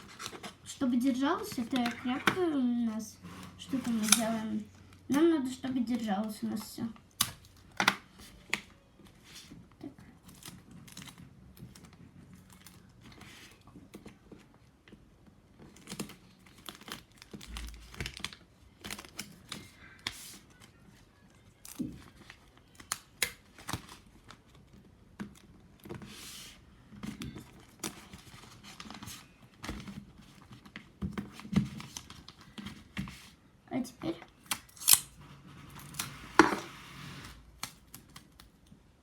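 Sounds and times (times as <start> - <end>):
paper crinkling and rustling: 0.0 - 5.0, 5.8 - 33.4, 35.3 - 38.8
sticky tape pulled and torn: 34.5 - 35.2.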